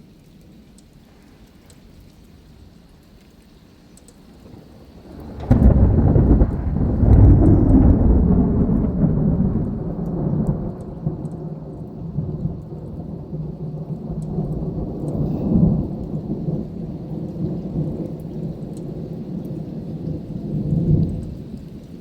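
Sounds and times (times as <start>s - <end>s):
thunder rumbling: 4.3s - 22.0s.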